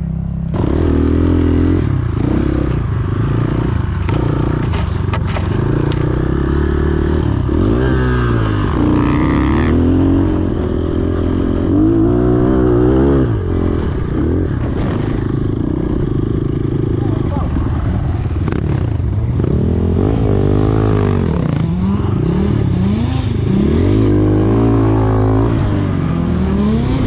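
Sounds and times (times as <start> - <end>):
dirt bike engine revving: 0.6 - 17.0, 18.4 - 27.0
knocks and rattles: 3.8 - 6.3.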